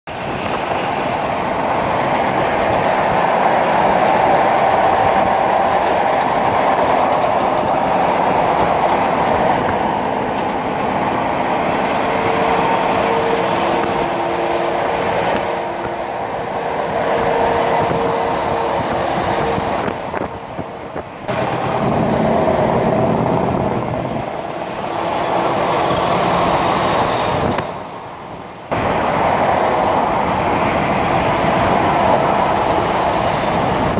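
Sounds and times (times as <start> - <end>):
trucks passing on highway: 0.1 - 33.9.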